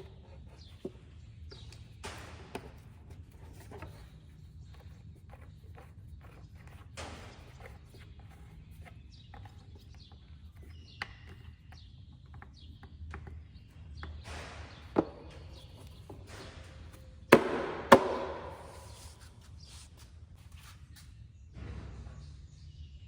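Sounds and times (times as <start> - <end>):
loud sharp ringing knocks: 17.4 - 18.8.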